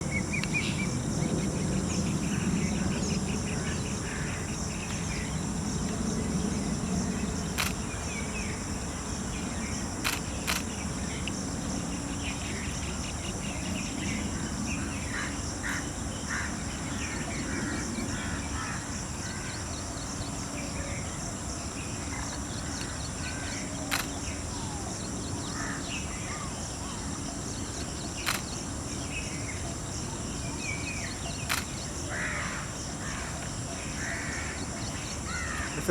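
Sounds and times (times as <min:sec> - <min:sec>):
high insect drone: 0:00.0 - 0:35.9
sharp clicks: 0:07.5 - 0:08.0, 0:10.0 - 0:11.4, 0:23.9 - 0:24.3, 0:28.2 - 0:28.6, 0:31.5 - 0:31.8.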